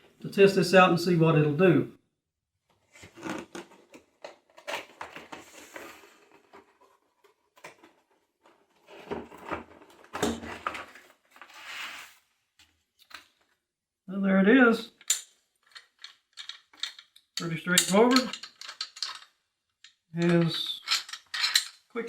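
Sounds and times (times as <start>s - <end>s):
packaging rustling: 2.9s - 11.5s
clicks and knocks of handling: 15.0s - 21.9s.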